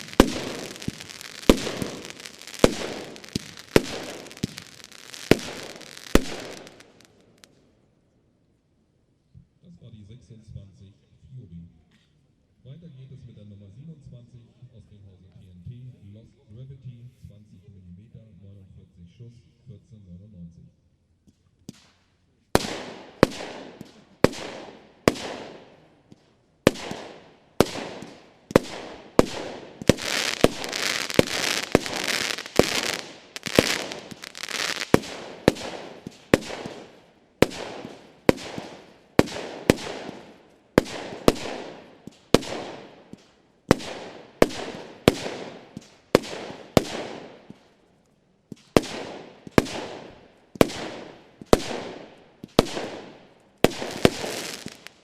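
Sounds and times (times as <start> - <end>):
firework battery shots: 0.0 - 7.5, 26.7 - 47.7, 48.5 - 55.0.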